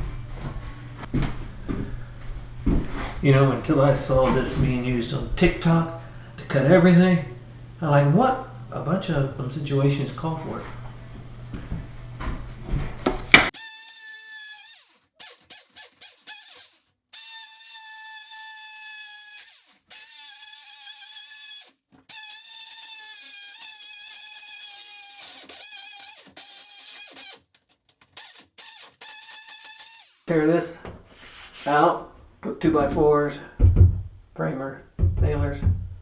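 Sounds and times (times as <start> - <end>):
power tool cutting drywall: 13.3 - 30.3.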